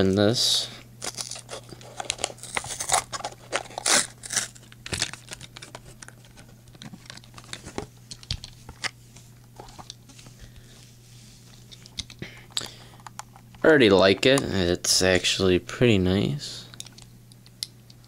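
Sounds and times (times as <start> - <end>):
plastic blister packaging crinkling: 1.0 - 10.1.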